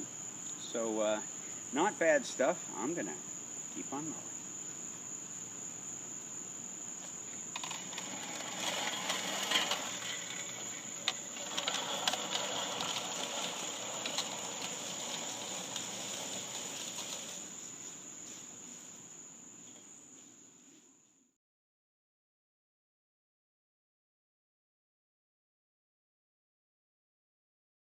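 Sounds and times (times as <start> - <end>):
high insect trill: 0.0 - 21.3
reel mower blades whirring: 7.5 - 18.0.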